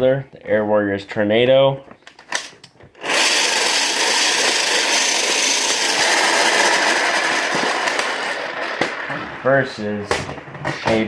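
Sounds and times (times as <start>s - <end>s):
blaster flywheels whirring: 3.0s - 10.5s.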